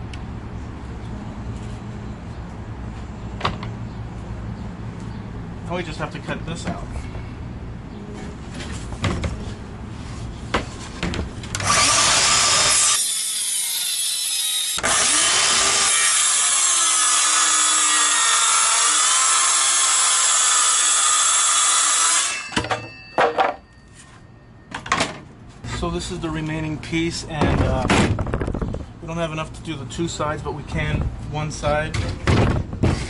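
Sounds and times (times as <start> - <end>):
power saw cutting plywood: 11.5 - 22.5.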